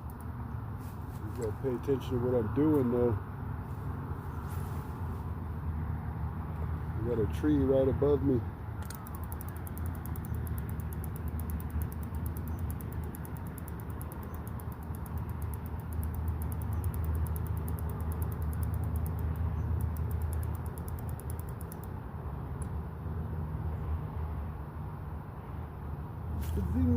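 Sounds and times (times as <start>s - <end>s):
fishing reel ticking: 8.8s - 21.9s.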